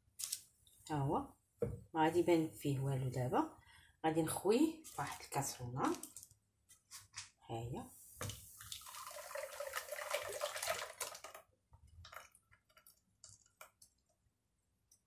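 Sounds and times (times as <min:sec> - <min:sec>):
liquid pouring into saucepan: 0:08.3 - 0:13.8.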